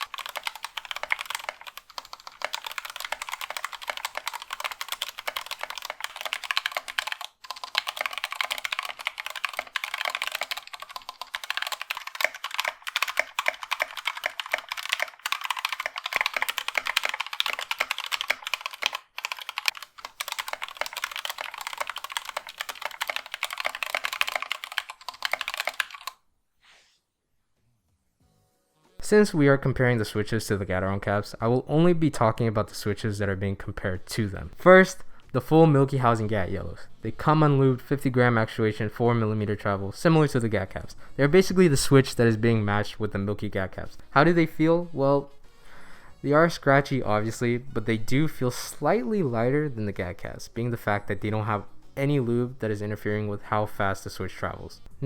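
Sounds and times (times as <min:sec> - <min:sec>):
mechanical keyboard typing: 0:00.0 - 0:26.2.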